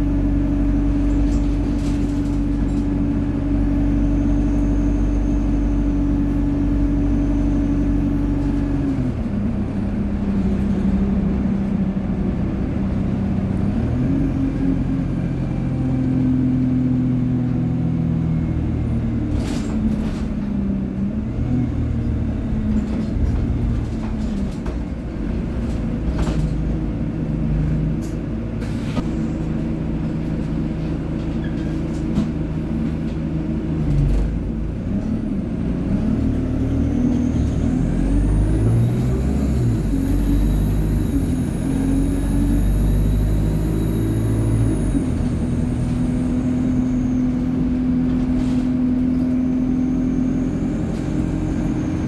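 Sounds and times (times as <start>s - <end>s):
bus diesel engine running: 0.0s - 52.0s
turbocharger whine: 37.5s - 47.4s.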